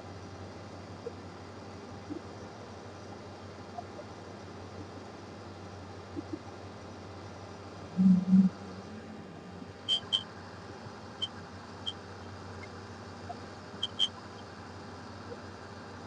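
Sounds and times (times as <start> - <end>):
short high chirps: 9.9 - 10.2, 13.8 - 14.2.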